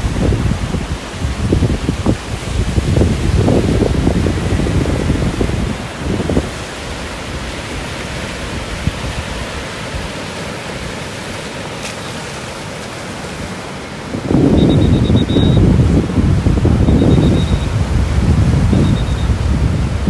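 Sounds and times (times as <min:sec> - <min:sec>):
wind buffeting microphone: 0:00.0 - 0:10.1, 0:14.1 - 0:20.0
sea surf washing in: 0:00.4 - 0:20.0.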